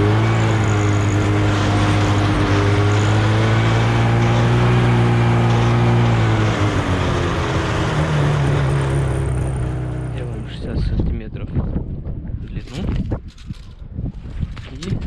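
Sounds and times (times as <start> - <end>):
chainsaw engine cutting: 0.0 - 10.5.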